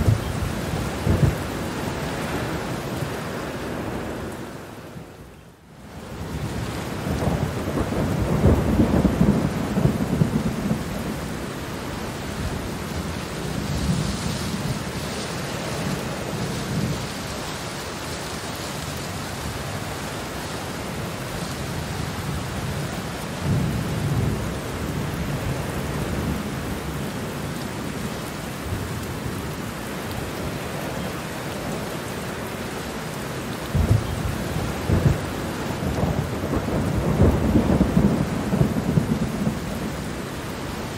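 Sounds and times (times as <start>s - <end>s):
low rolling thunder: 0.0s - 2.7s, 6.1s - 17.2s, 20.9s - 27.0s, 33.6s - 40.9s
steady rain: 0.0s - 40.9s.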